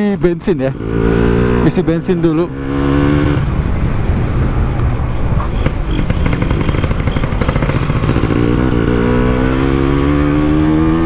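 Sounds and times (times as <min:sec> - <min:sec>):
two-stroke motorcycle engine running: 0:05.9 - 0:11.0.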